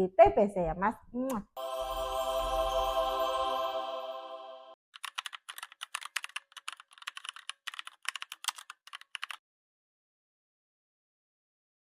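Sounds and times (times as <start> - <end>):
music track: 1.6 - 4.8
keyboard typing: 5.0 - 9.4.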